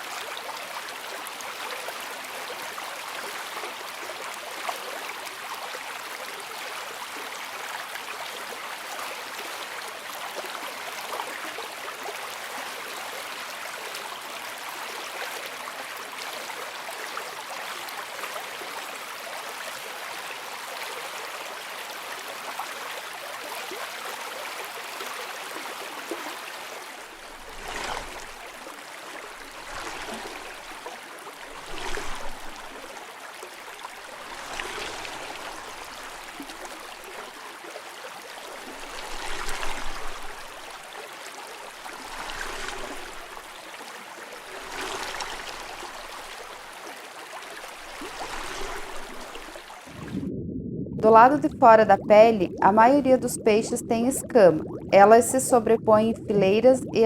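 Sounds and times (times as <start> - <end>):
rushing water: 0.0 - 50.4, 51.0 - 57.0
underwater bubbling: 26.9 - 33.0, 33.8 - 37.4, 38.4 - 41.0, 41.6 - 43.6, 44.3 - 46.7, 47.6 - 57.0.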